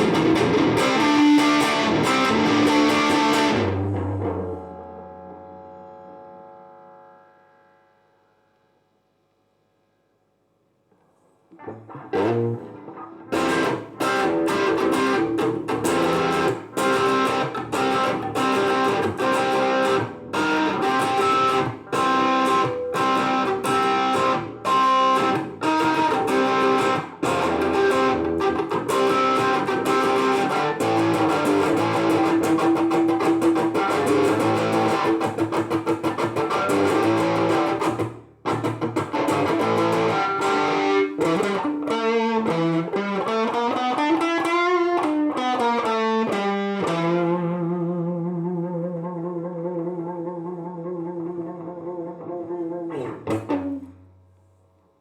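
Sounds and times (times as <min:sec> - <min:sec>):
distorted electric guitar: 0:00.0 - 0:08.8, 0:11.5 - 0:54.2.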